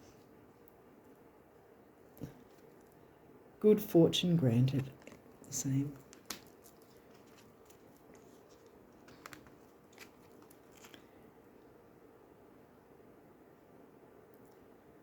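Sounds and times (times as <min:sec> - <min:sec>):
cards clicking and tapping: 0:04.8 - 0:11.0.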